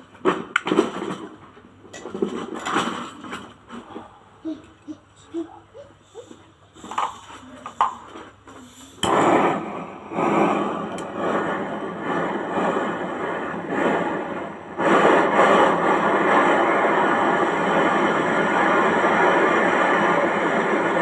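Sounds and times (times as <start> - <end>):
torch flame hissing: 6.1 - 21.0.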